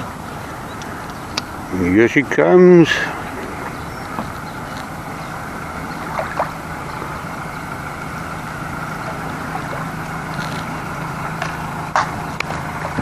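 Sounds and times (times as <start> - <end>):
boat engine humming: 0.0 - 13.0
wind and water rushing: 5.6 - 7.4.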